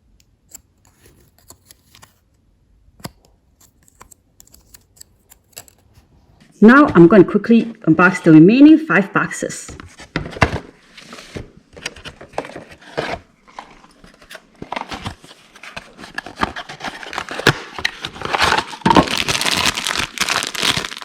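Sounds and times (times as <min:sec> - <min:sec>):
plastic wrapping crinkling and tearing: 0:13.5 - 0:21.0.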